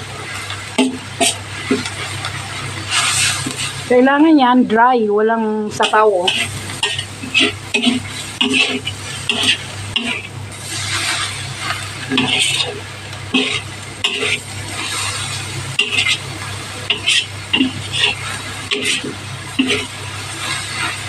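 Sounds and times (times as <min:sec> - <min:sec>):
light sizzle: 0:00.0 - 0:21.0
low steady hum: 0:00.0 - 0:21.0
utensil scraping a pan: 0:02.8 - 0:03.8, 0:05.7 - 0:21.0.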